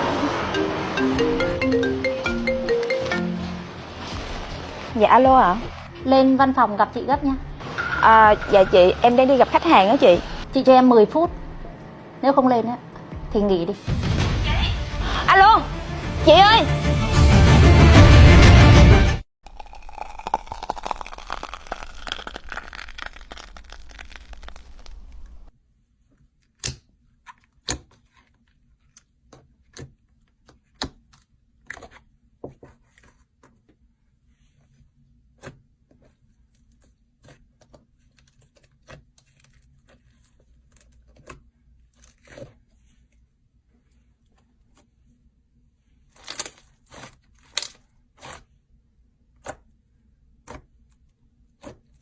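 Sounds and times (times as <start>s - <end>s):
slime crackling and popping: 19.5s - 25.5s.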